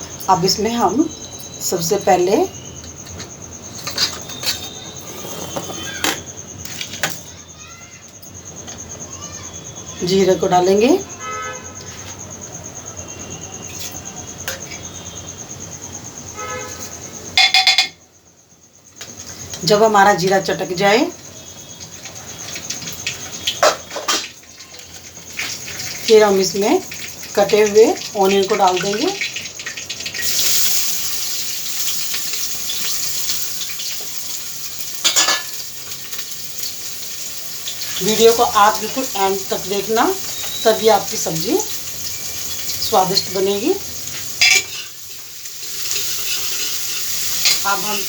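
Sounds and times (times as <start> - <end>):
spoon scraping a pot: 3.1 - 7.2, 44.4 - 45.0, 45.6 - 47.6
seeds sizzling in hot oil: 3.4 - 7.8, 19.1 - 48.0.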